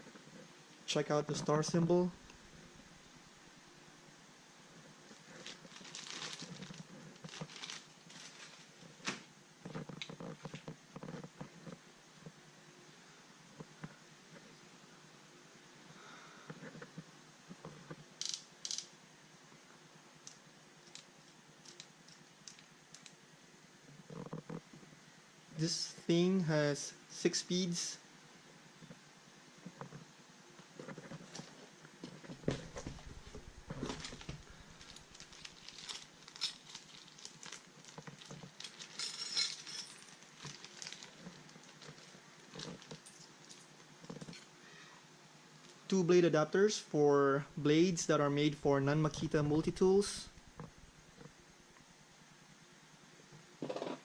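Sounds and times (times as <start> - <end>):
packaging rustle: 5.2 - 10.6, 32.4 - 44.4
light clicks and clinks of handling: 20.3 - 23.2, 33.8 - 44.6.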